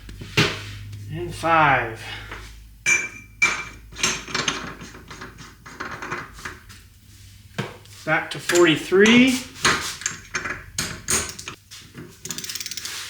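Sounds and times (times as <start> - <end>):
metal hand tools clinking: 2.8 - 6.8, 7.8 - 11.6.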